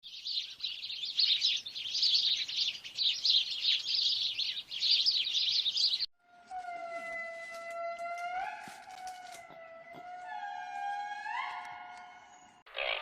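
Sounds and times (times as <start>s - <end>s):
flock of birds chirping: 0.0s - 6.1s.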